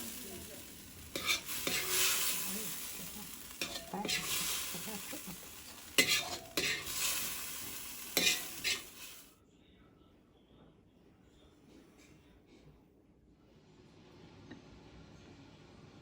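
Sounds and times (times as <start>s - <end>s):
spatula knocking and scraping pan: 0.0s - 9.2s
food sizzling in a pan: 0.0s - 9.4s.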